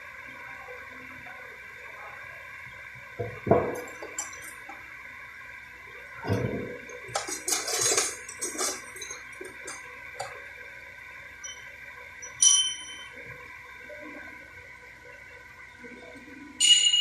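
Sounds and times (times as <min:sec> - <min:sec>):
metal clanking and scraping: 0:06.3 - 0:10.3
bright metallic ring: 0:11.4 - 0:13.2, 0:16.6 - 0:17.0.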